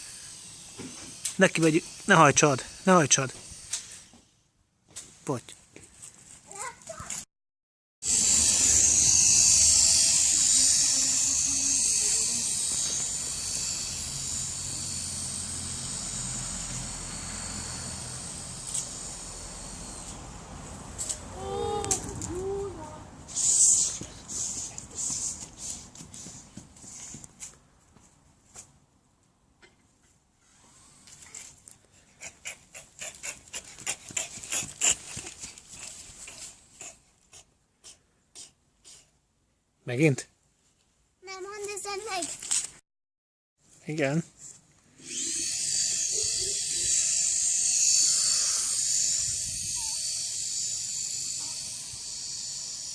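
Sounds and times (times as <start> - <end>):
toy helicopter motor whirring: 0.0 - 4.2, 8.0 - 27.2, 32.2 - 37.4, 44.9 - 52.9
quick uneven panting: 32.0 - 39.1.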